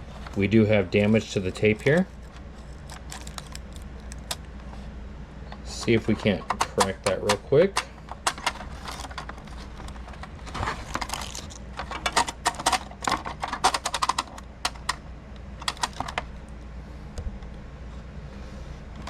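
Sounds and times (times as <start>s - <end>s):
plastic cassette clicking and rattling: 1.0s - 4.5s, 6.2s - 15.0s, 15.6s - 16.3s.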